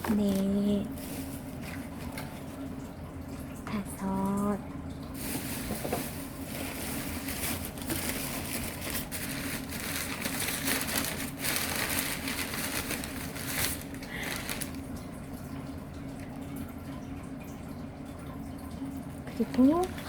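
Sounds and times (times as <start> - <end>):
packing material crinkling: 5.2 - 14.9.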